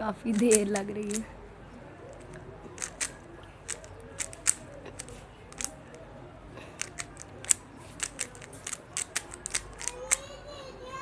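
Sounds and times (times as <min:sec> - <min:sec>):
puzzle cube plastic clicks: 0:00.3 - 0:01.3, 0:02.1 - 0:06.0, 0:06.7 - 0:10.2.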